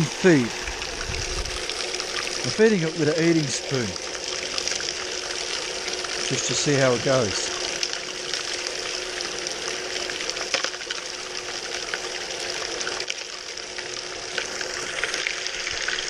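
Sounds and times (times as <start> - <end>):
water pump hum: 0.0 - 16.0
water rushing through sluice: 0.0 - 16.0.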